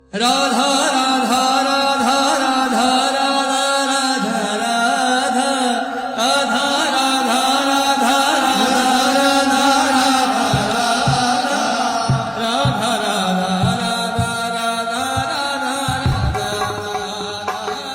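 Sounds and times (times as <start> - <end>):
low drum beats: 10.5 - 17.9.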